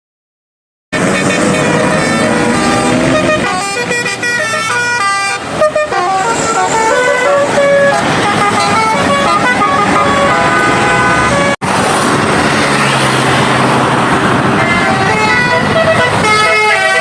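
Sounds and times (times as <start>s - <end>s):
traffic noise: 0.9s - 17.0s
bus horn playing a tune: 1.0s - 11.6s, 14.5s - 17.0s
engine noise: 1.0s - 17.0s.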